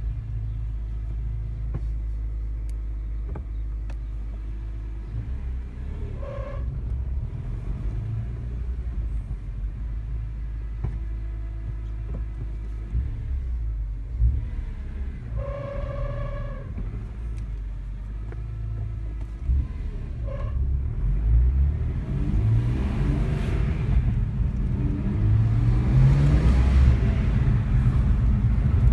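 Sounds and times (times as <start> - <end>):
car engine running: 0.0 - 28.9
engine revving: 18.6 - 28.9.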